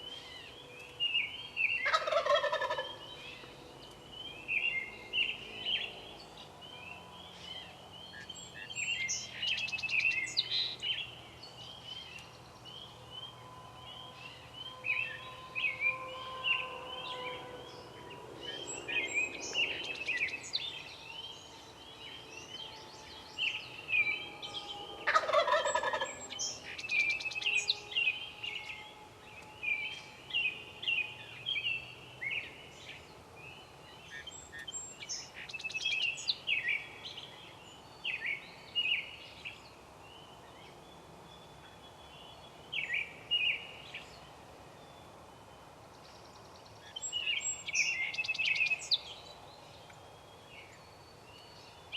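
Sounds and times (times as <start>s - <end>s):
songbirds chirping: 0.0s - 51.9s
wild turkey gobbling: 1.8s - 3.0s, 25.0s - 26.2s.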